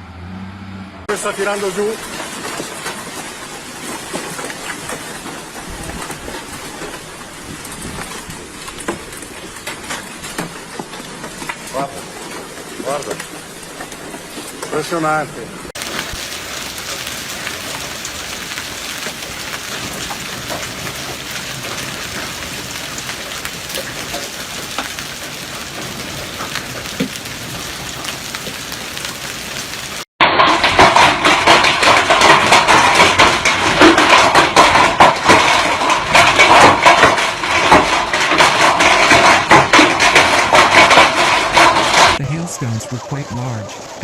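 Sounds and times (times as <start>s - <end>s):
hailstones clattering: 1.1s - 42.8s
heavy precipitation hiss: 15.8s - 30.1s.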